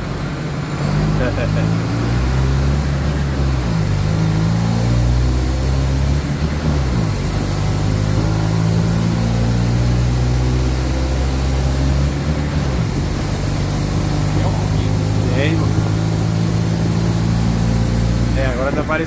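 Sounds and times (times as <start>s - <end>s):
bus diesel engine under load: 0.0s - 19.0s.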